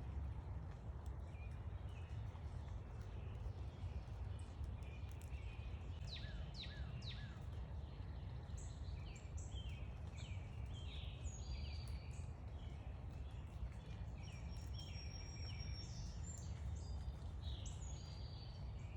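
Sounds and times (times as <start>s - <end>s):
songbirds calling: 3.0s - 18.9s.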